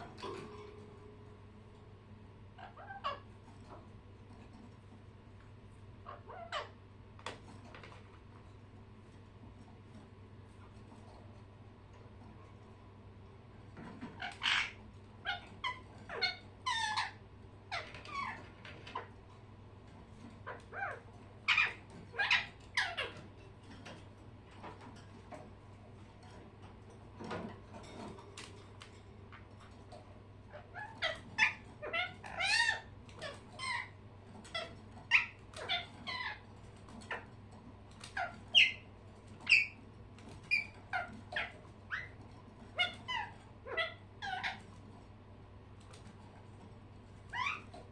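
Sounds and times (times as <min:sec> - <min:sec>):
pet birds chirping and squeaking: 0:00.0 - 0:47.9.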